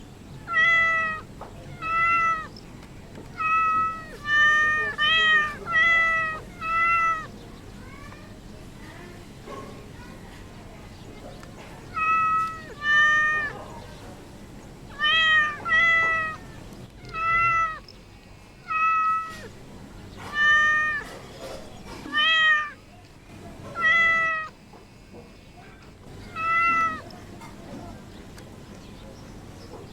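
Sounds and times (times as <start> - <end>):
cat meowing: 0.4 - 2.5, 3.3 - 8.3, 11.8 - 13.6, 14.9 - 17.8, 18.6 - 19.5, 20.2 - 21.2, 22.0 - 22.8, 23.7 - 24.6, 26.2 - 27.1.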